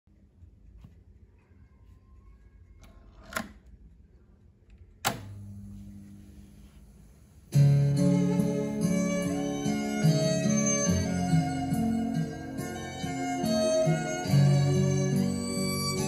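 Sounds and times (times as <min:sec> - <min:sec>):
low hum and hiss: 0:00.1 - 0:16.0
cassette deck clicks: 0:05.0 - 0:05.5
guitar music: 0:07.5 - 0:16.0.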